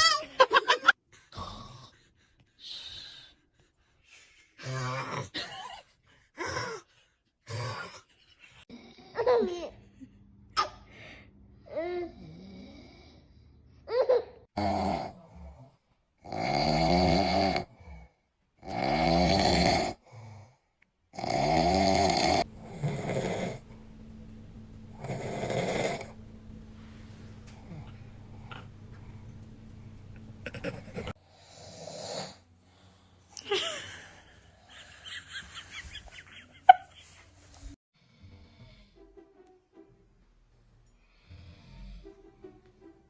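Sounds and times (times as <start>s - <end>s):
man snoring: 12.1s - 13.4s, 14.6s - 20.4s, 21.1s - 23.7s, 25.0s - 26.2s
faint low hum: 22.4s - 31.2s.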